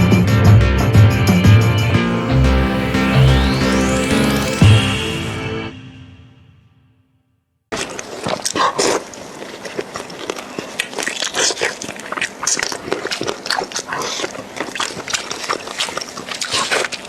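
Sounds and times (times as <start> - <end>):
wet mouth smacks and sucking: 7.8 - 17.0.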